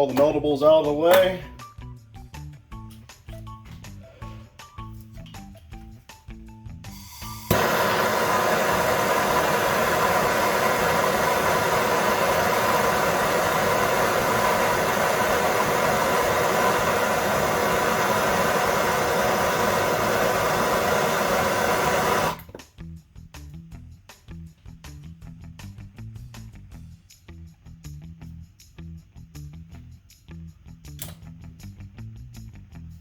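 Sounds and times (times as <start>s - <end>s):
gas torch hissing: 6.9s - 22.6s.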